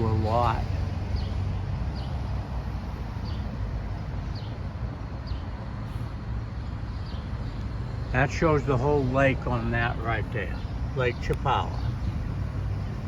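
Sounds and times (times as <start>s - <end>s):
highway traffic rumble: 0.0s - 13.0s.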